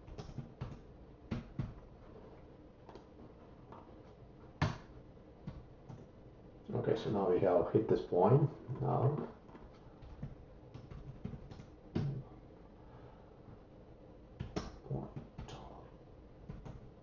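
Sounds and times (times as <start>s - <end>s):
low room hum: 0.0s - 17.0s
computer keyboard keystrokes: 0.1s - 1.8s, 10.0s - 12.1s.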